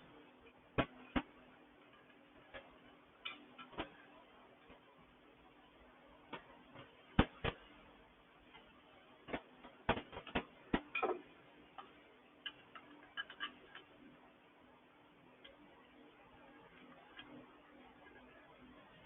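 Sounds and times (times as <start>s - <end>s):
small metal parts clicking: 12.4s - 13.9s.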